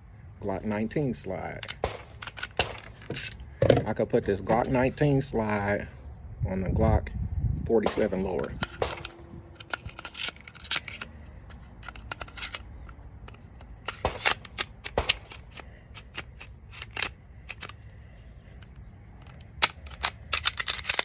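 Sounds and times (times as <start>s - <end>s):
pistol slide metal clicks: 7.9s - 17.8s, 18.6s - 21.0s.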